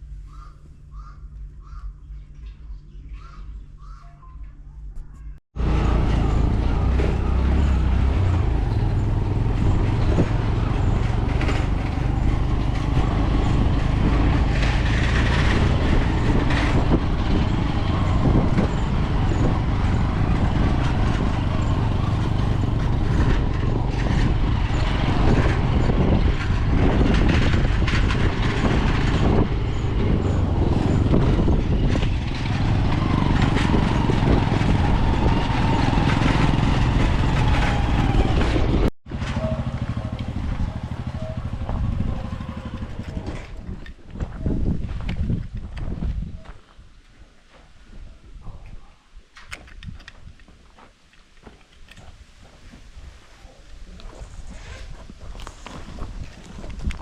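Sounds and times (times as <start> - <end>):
vehicle engine and road rumble: 0.0 - 57.0
knocks and rattles: 5.6 - 44.4.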